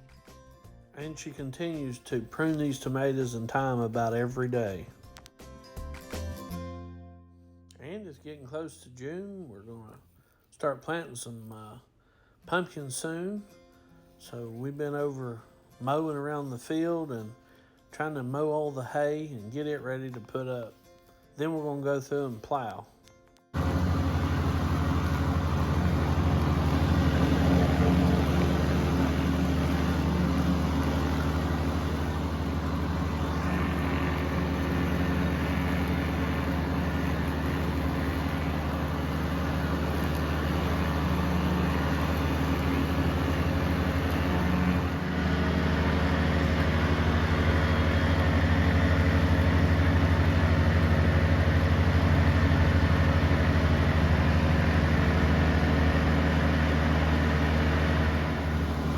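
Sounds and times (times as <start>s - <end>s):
tractor engine running: 23.6s - 58.9s.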